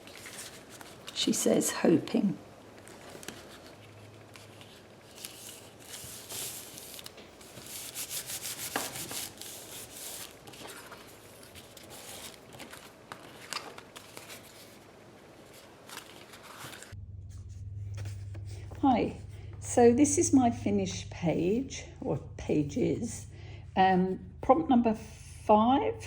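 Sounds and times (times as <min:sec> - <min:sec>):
paper being rubbed: 0:05.1 - 0:12.4.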